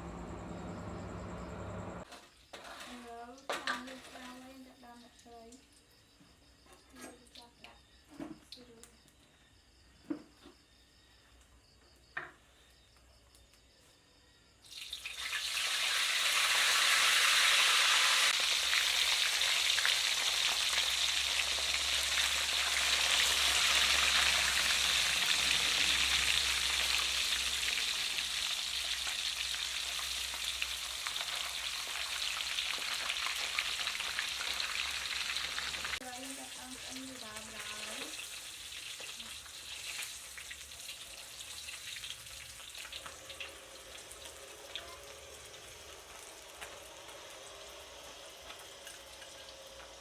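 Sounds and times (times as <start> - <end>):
fish sizzling in hot oil: 14.6 - 50.0.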